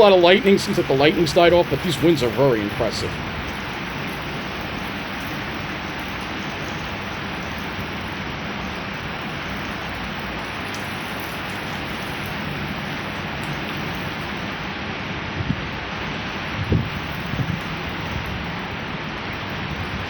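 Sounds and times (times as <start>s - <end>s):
rain downpour: 0.0s - 20.0s
strong wind gusts: 13.5s - 20.0s.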